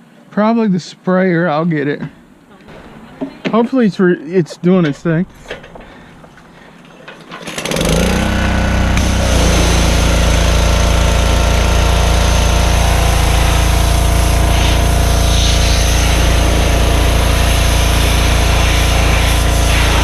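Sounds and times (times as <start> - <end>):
small gasoline engine running: 7.4 - 20.0.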